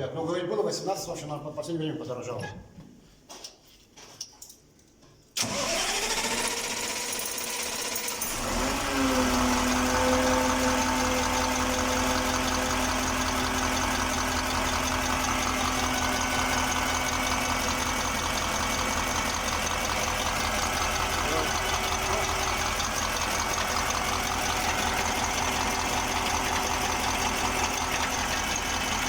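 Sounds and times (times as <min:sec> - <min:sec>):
starter motor cranking: 0:05.4 - 0:29.0
diesel truck engine idling: 0:08.4 - 0:29.0.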